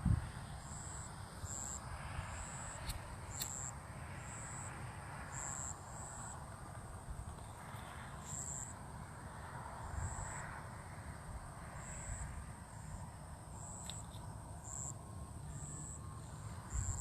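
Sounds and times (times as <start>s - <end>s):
insects chirping: 0.0s - 17.0s.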